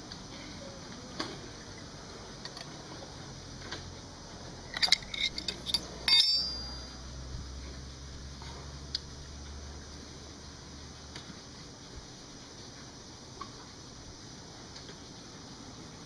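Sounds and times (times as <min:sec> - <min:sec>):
small metal parts clinking: 0:04.7 - 0:07.0
metallic clank with high ring: 0:04.8 - 0:07.1.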